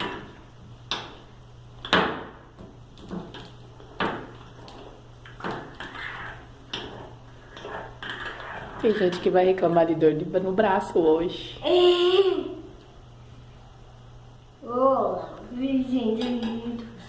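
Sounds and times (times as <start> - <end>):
low steady hum: 0.0 - 17.0
utensil scraping a plate: 4.6 - 9.6.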